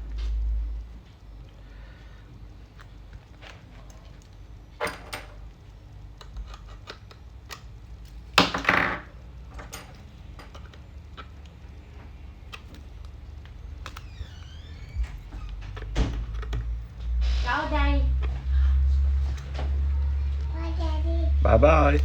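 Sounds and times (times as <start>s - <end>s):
laptop parts clicking and tapping: 6.1s - 8.6s, 15.5s - 16.9s.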